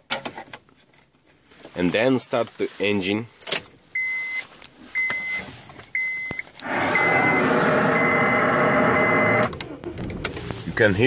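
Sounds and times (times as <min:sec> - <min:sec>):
car warning chime beeping: 0:03.9 - 0:09.6
car engine cranking on starter: 0:06.6 - 0:10.6.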